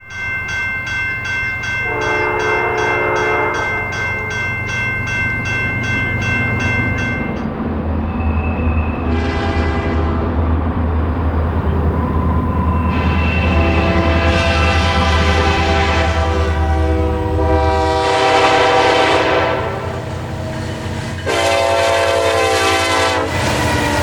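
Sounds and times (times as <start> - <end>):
bell ringing rapidly: 0.0 - 7.5
train rumble: 0.0 - 24.0
steam locomotive whistle: 1.8 - 4.4, 8.1 - 10.4, 12.5 - 24.0.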